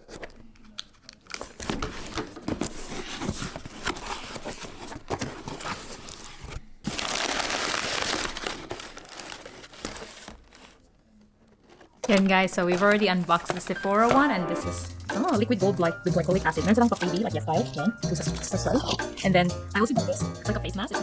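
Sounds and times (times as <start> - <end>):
packaging crinkling: 0.0 - 15.6
packaging rustling: 0.0 - 19.0.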